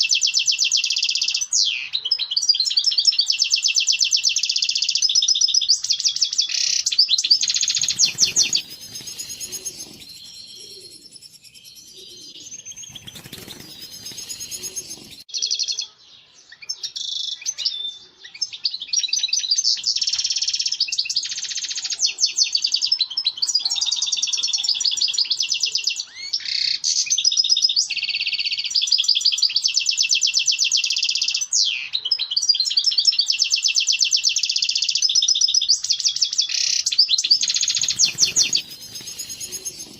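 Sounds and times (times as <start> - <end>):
goldfinch twittering song: 0.0 - 15.6, 28.6 - 39.9.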